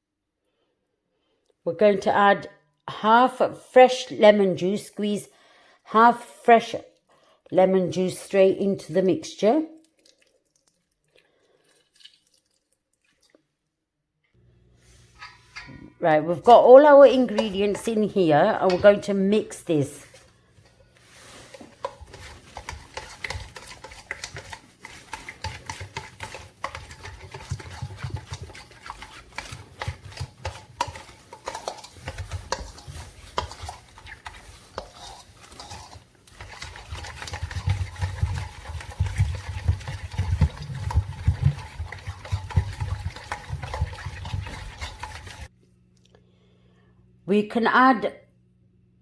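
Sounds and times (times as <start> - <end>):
spoon stirring and scraping bowl: 14.8 - 45.5.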